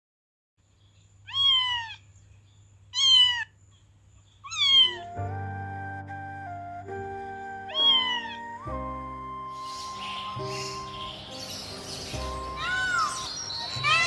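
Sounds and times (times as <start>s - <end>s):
cat meowing: 1.3s - 2.0s, 2.9s - 3.5s, 4.4s - 5.2s, 7.7s - 8.6s, 12.4s - 14.0s
background music with held notes: 5.0s - 14.0s.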